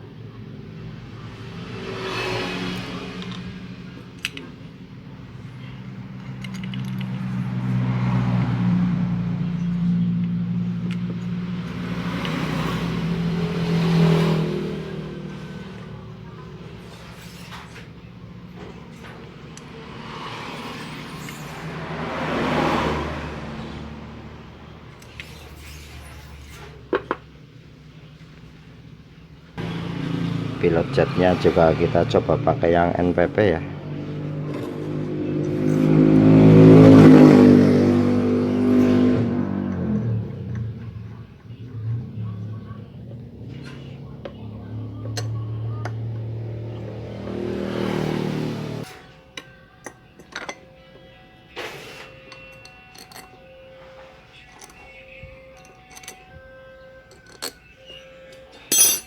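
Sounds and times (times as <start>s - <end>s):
vehicle engine running: 0.0s - 49.0s
small metal parts clinking: 6.1s - 7.4s, 52.3s - 53.4s, 54.4s - 56.3s, 57.0s - 57.7s, 58.6s - 59.0s.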